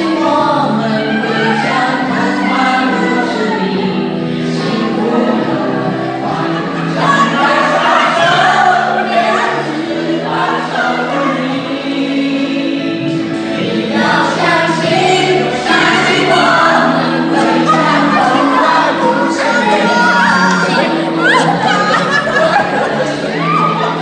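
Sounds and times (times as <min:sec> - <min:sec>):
choir singing: 0:00.0 - 0:24.0
sustained instrumental notes: 0:13.2 - 0:24.0.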